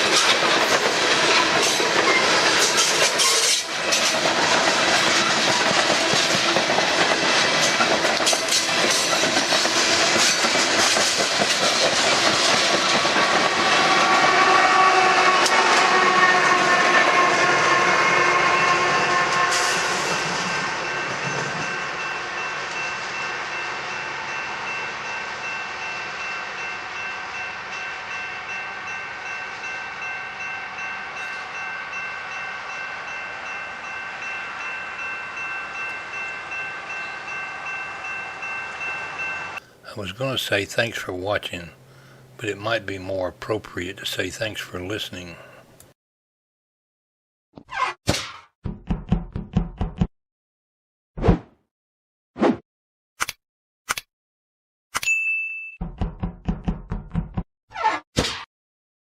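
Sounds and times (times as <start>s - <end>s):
train wheels clicking over rails: 0.0s - 14.4s
locomotive horn: 13.5s - 21.0s.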